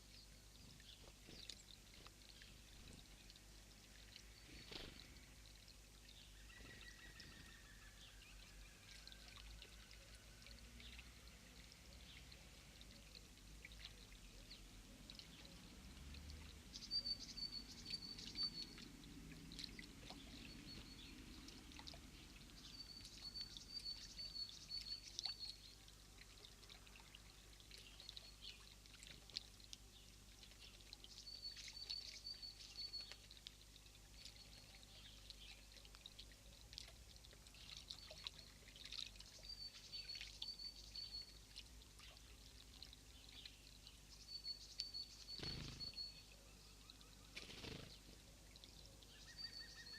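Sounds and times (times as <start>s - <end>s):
small bird trilling: 45.2s - 46.2s.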